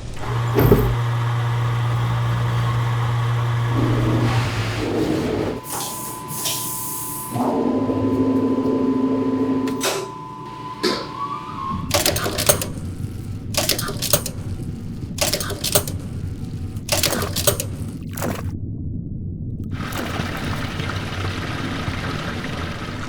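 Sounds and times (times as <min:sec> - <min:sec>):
rapid mechanical clattering: 0:11.8 - 0:18.6.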